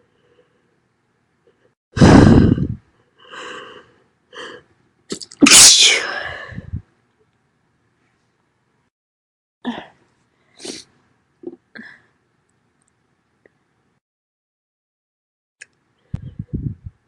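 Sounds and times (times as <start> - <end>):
woman sneezing loudly: 5.4 - 6.2.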